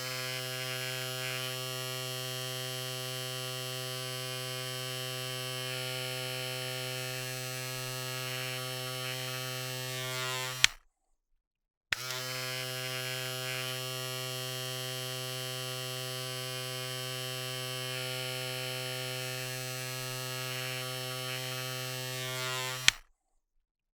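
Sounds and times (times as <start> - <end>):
electric razor buzzing: 0.0 - 10.8, 12.0 - 23.0
razor switch click: 10.5 - 10.8, 12.0 - 12.2, 22.6 - 23.0.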